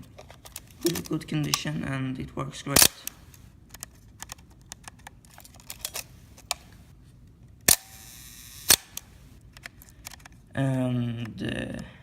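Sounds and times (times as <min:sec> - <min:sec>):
camera shutter click: 0:07.7 - 0:09.1
shutter timing mechanism whirring: 0:07.7 - 0:09.2.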